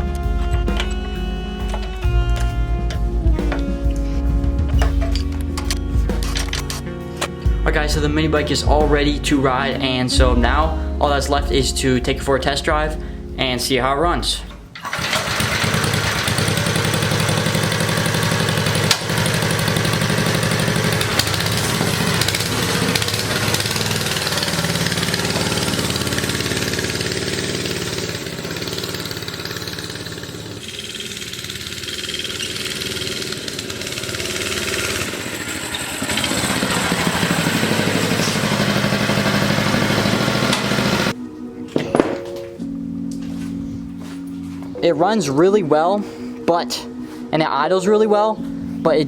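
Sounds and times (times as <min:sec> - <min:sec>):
small engine running: 0:00.0 - 0:07.4, 0:14.7 - 0:41.2.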